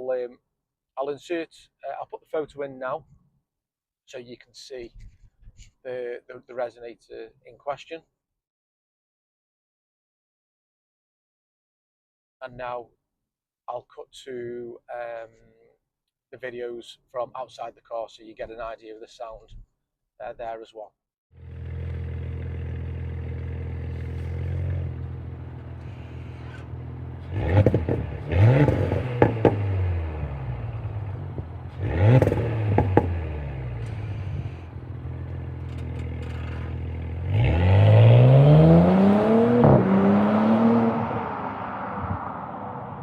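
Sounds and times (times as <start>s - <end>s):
car engine idling and revving: 21.4s - 43.0s.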